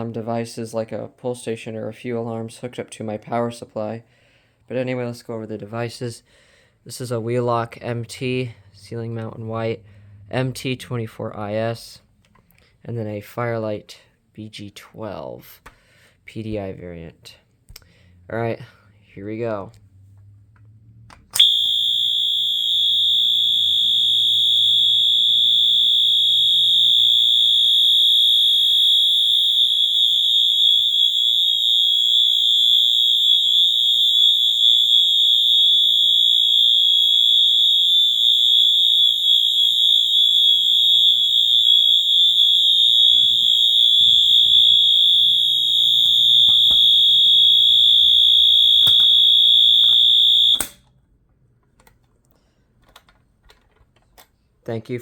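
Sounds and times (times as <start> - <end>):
fire alarm horn tone: 21.3 - 50.8.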